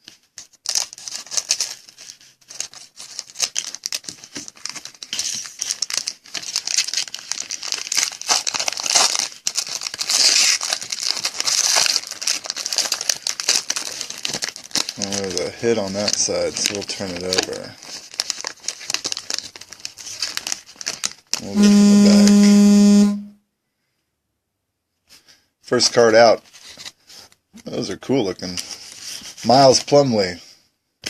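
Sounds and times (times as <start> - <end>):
plastic and foil wrapping crinkling: 0.0 - 22.6, 26.2 - 30.4.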